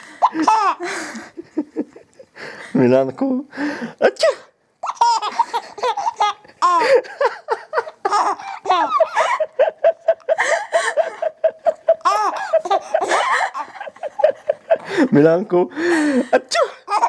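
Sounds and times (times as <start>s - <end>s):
baby belly-laughing: 0.2s - 0.9s, 4.8s - 7.1s, 7.8s - 14.8s.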